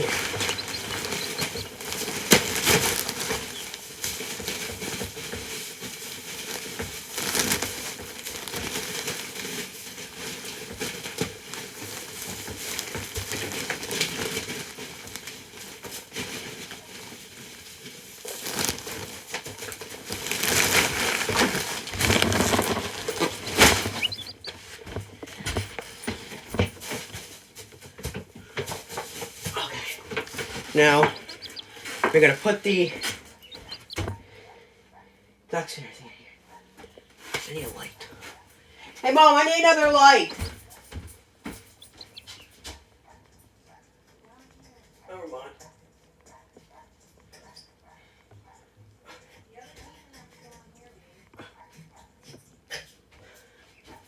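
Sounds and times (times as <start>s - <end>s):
bedding crinkling and rustling: 0.0s - 34.6s, 36.8s - 45.0s.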